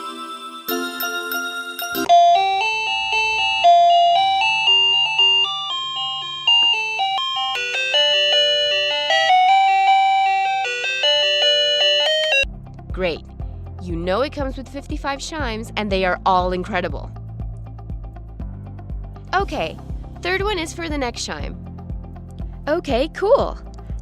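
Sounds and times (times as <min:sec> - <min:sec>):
electronic doorbell chime melody: 0:00.0 - 0:12.5.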